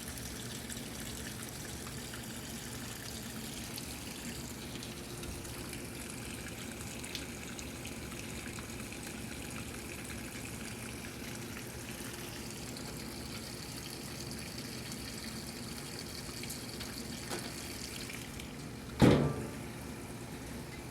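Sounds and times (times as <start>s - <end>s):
washing machine watery rushing: 0.0s - 20.9s
loud thump: 19.0s - 19.5s.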